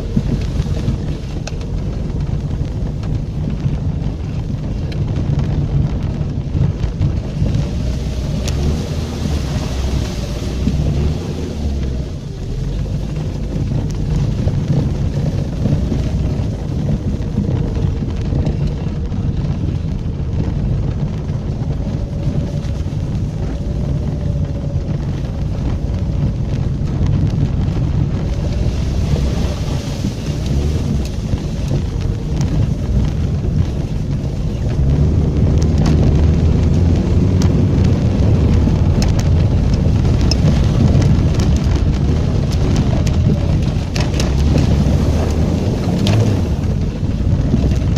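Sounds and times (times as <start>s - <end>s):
car engine revving under load: 0.0s - 47.9s
tyres rumbling through mud: 0.0s - 47.9s.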